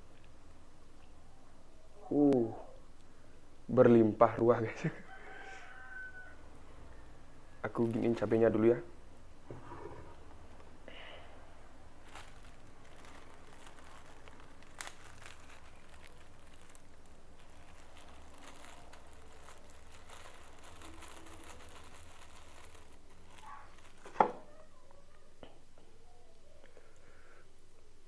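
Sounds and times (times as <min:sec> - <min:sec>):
hands rustling and crinkling: 0:06.3 - 0:28.0.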